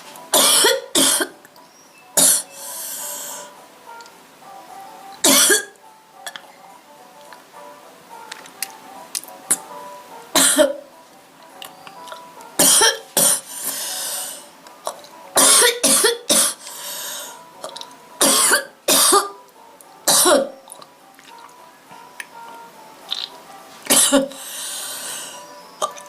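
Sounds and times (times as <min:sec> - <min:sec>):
girl coughing: 0:00.4 - 0:01.4, 0:05.2 - 0:05.7, 0:10.4 - 0:10.8, 0:12.6 - 0:13.4, 0:15.4 - 0:16.6, 0:18.2 - 0:19.4, 0:20.1 - 0:20.5, 0:23.9 - 0:24.3
breathy sounds: 0:02.2 - 0:03.6, 0:13.2 - 0:15.0, 0:16.4 - 0:17.8, 0:24.2 - 0:25.9.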